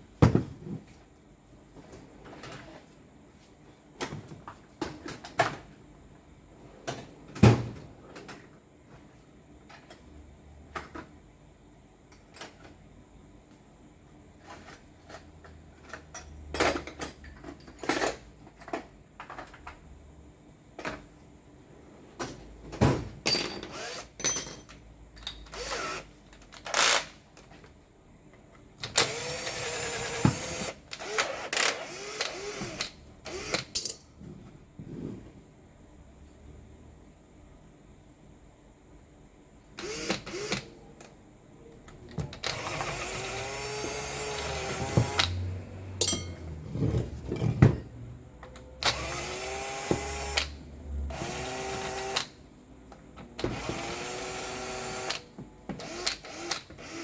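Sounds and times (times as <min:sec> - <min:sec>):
sharp knocks and clicks of metal parts: 0:14.4 - 0:19.8, 0:43.8 - 0:46.6.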